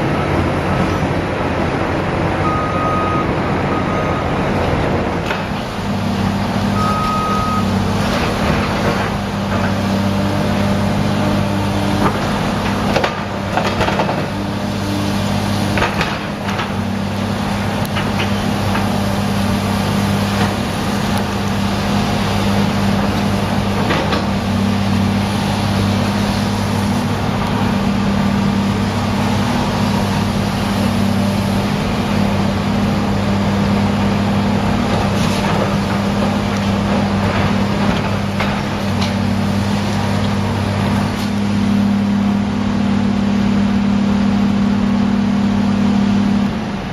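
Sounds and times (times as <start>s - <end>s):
diesel machinery droning: 0.0s - 46.9s.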